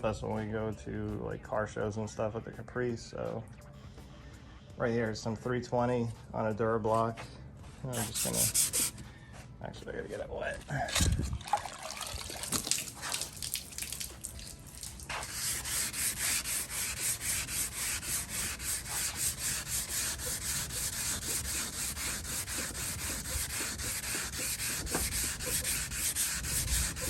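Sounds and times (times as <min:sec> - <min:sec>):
sandpaper sanding strokes: 0:07.9 - 0:09.0, 0:14.9 - 0:27.0.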